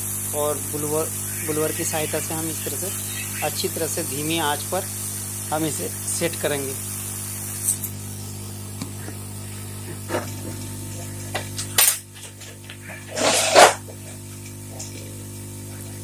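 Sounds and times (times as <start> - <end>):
loud hissing burst: 0.0 - 7.6
hot-air blower hissing: 0.0 - 16.0.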